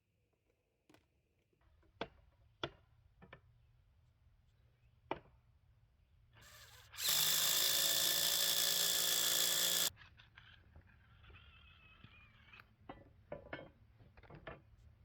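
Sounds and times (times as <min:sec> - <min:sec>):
power tool whining: 0:06.4 - 0:09.9.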